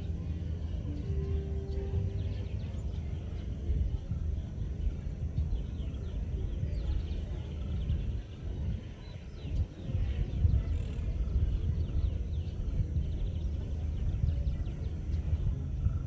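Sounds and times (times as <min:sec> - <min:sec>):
birds chirping: 0:00.0 - 0:16.0
low rumble: 0:00.0 - 0:16.0.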